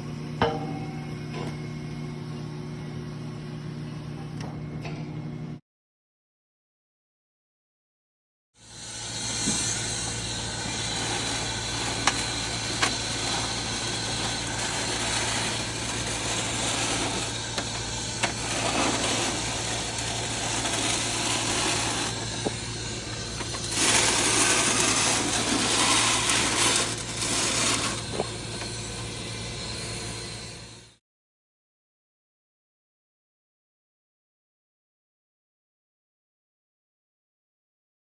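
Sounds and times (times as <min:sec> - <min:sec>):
electrical hum: 0:00.0 - 0:05.6, 0:08.7 - 0:31.0
welding arc crackling: 0:08.6 - 0:30.5.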